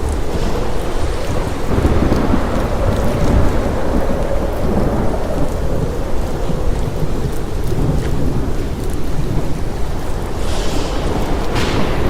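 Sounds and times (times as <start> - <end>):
low rumble of waves: 0.0 - 12.0
breaking wave hiss: 10.0 - 12.0.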